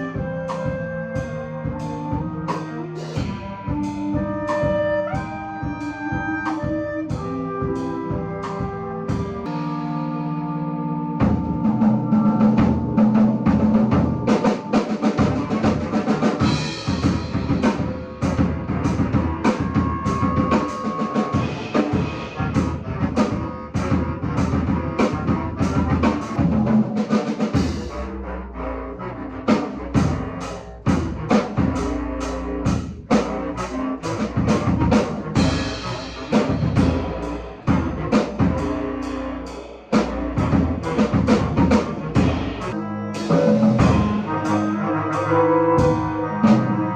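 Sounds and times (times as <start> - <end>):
low bass clarinet chords: 0.0 - 46.9
fast dense drumming: 11.2 - 28.1, 29.4 - 44.6.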